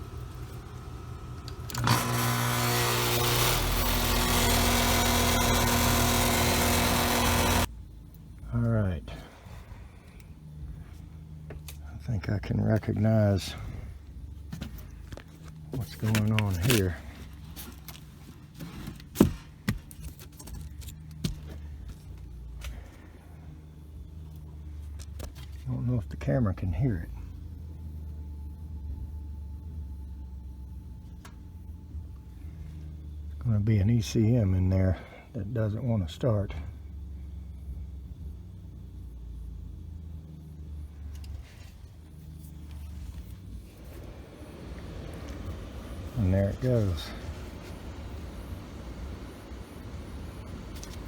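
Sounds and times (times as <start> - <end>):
heat pump click: 0.0 - 4.0, 43.8 - 51.0
heat pump mechanical hum: 0.0 - 51.0.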